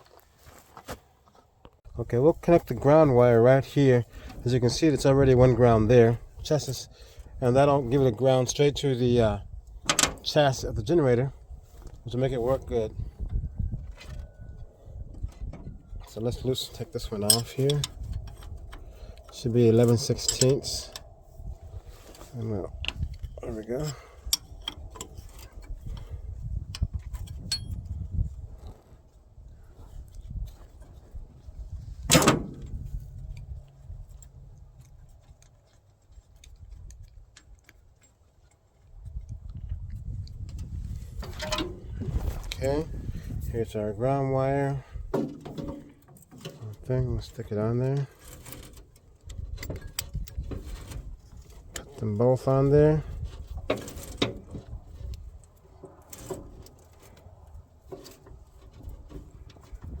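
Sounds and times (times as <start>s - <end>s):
hand tools clicking and clinking: 17.1s - 18.6s, 19.2s - 21.1s, 26.8s - 27.8s.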